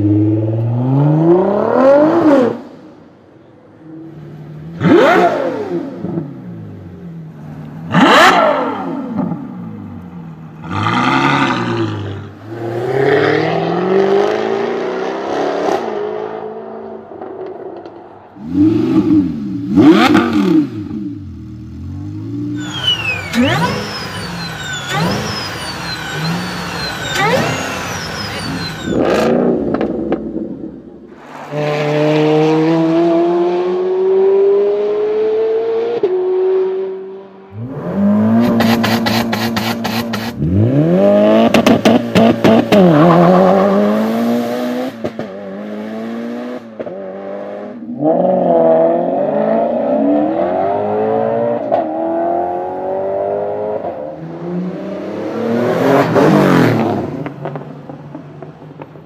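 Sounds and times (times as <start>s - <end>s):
high-revving engines accelerating: 0.0s - 2.8s, 3.9s - 57.7s.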